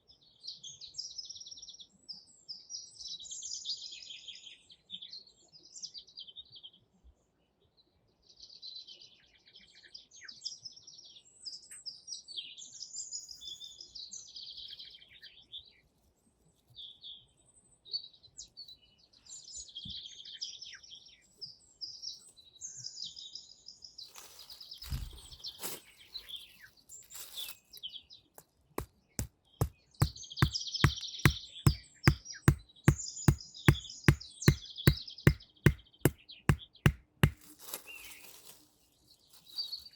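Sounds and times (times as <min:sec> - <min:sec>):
songbirds chirping: 0:16.8 - 0:39.9
brief rustle: 0:24.1 - 0:26.0, 0:26.9 - 0:27.7, 0:37.4 - 0:38.7.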